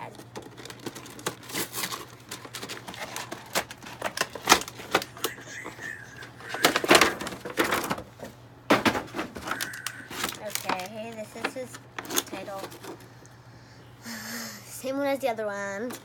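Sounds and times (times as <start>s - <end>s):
packaging being opened: 0.0s - 8.1s, 8.9s - 13.1s.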